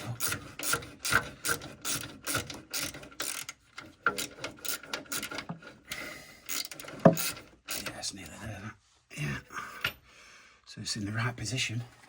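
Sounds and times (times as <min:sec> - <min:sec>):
ratchet wrench clicking: 0:00.1 - 0:05.4, 0:06.5 - 0:08.0.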